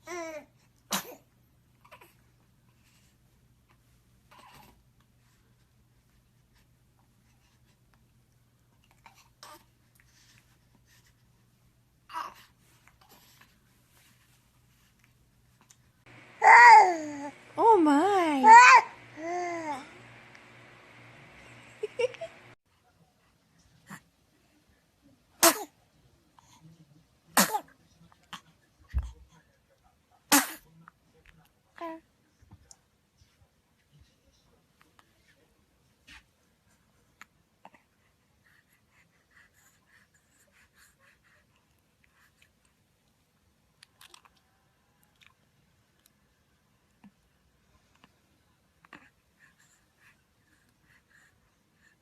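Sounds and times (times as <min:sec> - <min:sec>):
baby sneezing: 0:00.9 - 0:01.3, 0:25.4 - 0:25.8, 0:27.4 - 0:27.7, 0:30.3 - 0:30.6
low hum: 0:16.1 - 0:22.6.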